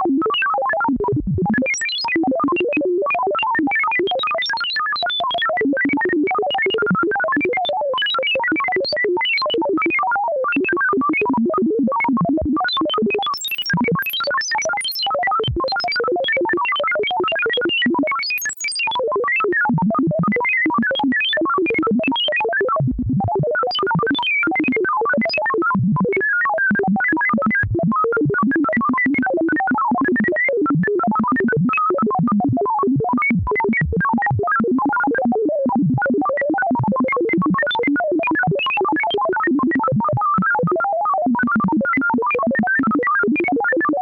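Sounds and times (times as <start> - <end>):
rapid random electronic beeps: 13.3 - 15.9, 18.2 - 18.9.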